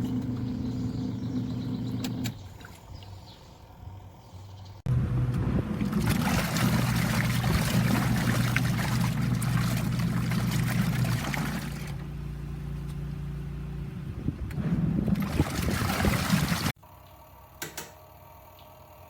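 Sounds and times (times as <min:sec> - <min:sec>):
washing machine motor humming: 0:00.0 - 0:02.5, 0:04.9 - 0:13.4, 0:14.0 - 0:16.8
churning splashing water: 0:05.6 - 0:12.0, 0:15.0 - 0:16.8.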